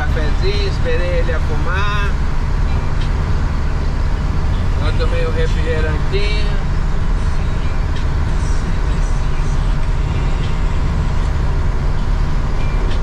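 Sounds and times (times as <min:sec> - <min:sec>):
truck engine and road noise drone: 0:00.0 - 0:13.0.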